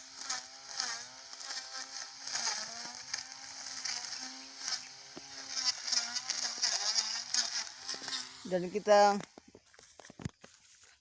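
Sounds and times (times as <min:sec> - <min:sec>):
electric brush cutter motor whining: 0:00.0 - 0:10.2.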